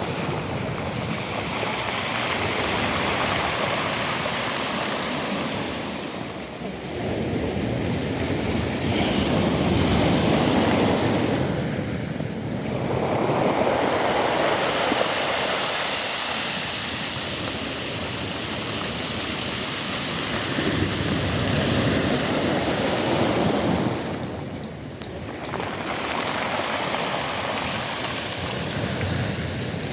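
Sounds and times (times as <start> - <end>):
waves breaking on pebble beach: 0.0 - 29.9.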